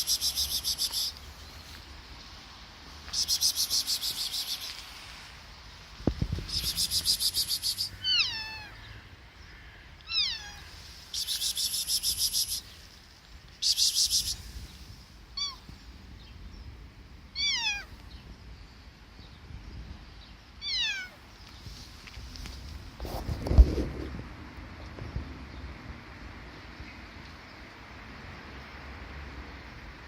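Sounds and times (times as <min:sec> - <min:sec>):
kitten meowing: 0:06.5 - 0:08.8, 0:10.1 - 0:12.6, 0:15.4 - 0:15.7, 0:17.4 - 0:18.0, 0:20.6 - 0:21.2.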